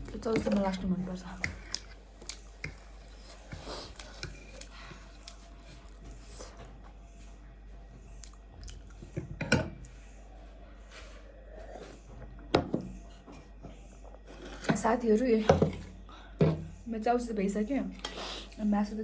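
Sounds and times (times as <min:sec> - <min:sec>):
person chewing food: 0:01.4 - 0:07.0, 0:08.1 - 0:09.9.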